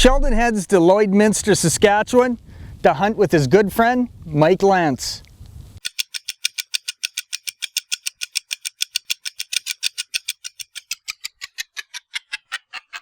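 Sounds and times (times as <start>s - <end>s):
rapid even ticking: 5.8s - 12.9s.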